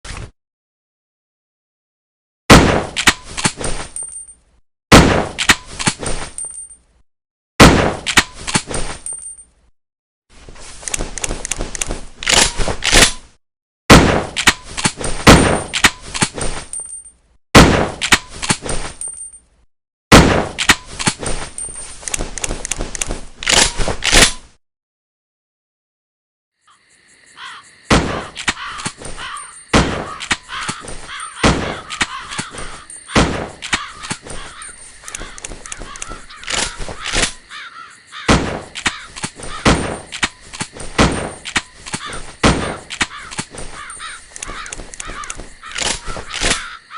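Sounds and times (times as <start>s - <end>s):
loud rifle shot: 2.5s - 3.1s, 4.9s - 5.5s, 7.6s - 8.2s, 13.9s - 14.5s, 17.6s - 18.2s, 20.1s - 20.7s, 39.6s - 40.1s
rifle clicks and knocks: 10.8s - 13.3s, 20.6s - 24.5s, 33.6s - 37.4s, 38.7s - 42.2s, 42.8s - 46.8s.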